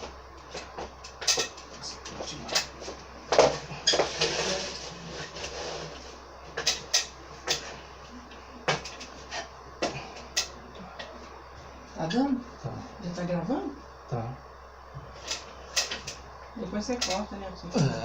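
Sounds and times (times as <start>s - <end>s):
scraping rustle: 4.0s - 6.2s.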